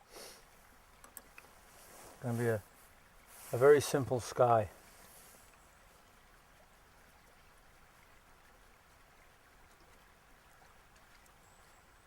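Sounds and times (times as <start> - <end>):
faint outdoor hiss: 0.0 - 12.0
tiny soft ticks: 1.0 - 1.6, 10.6 - 11.4.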